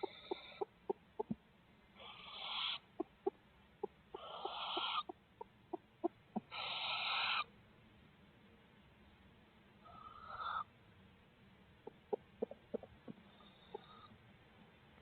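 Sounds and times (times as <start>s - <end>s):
owlets raspy begging calls: 2.0s - 3.1s, 4.1s - 5.1s, 6.4s - 7.5s.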